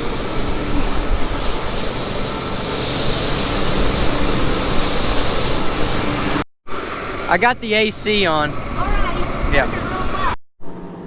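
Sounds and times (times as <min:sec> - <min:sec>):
rushing hiss: 0:00.0 - 0:06.8
farm machine engine running: 0:00.0 - 0:11.0.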